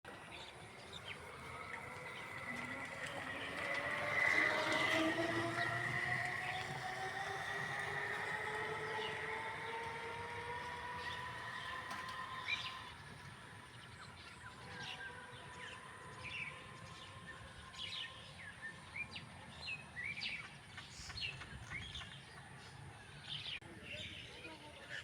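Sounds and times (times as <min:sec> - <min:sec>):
droning tone with overtones: 0:00.1 - 0:19.8.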